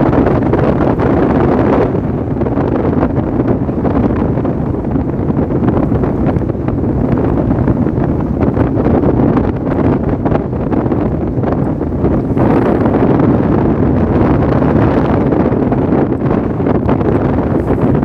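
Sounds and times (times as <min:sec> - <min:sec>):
strong wind buffeting microphone: 0:00.0 - 0:18.0.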